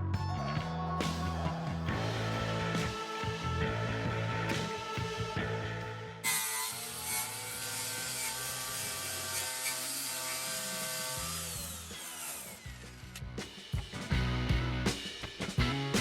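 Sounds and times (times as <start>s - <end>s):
background music: 0.0s - 9.4s, 10.0s - 16.0s
wire brush grinder whining: 2.0s - 13.5s.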